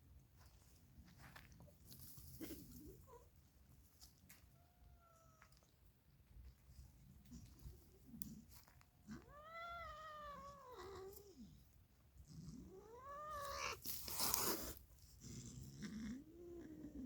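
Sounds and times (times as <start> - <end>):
cat meowing: 9.1 - 11.3, 12.7 - 13.8.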